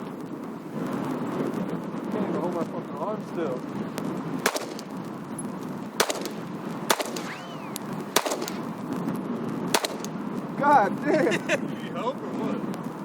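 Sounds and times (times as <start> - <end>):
wind noise: 0.0 - 13.0
pistol shots: 4.4 - 5.0, 6.0 - 8.8, 9.7 - 10.2.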